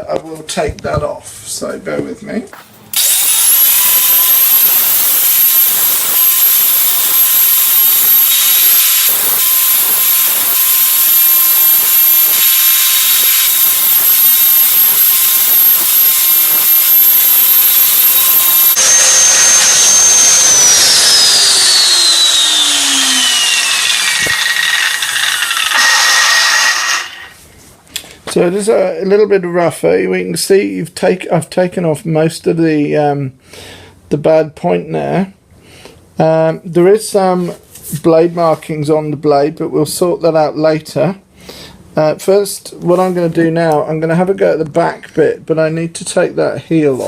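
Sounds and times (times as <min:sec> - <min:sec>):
angle grinder whining: 0:02.6 - 0:27.4
whine falling in pitch: 0:02.9 - 0:24.4.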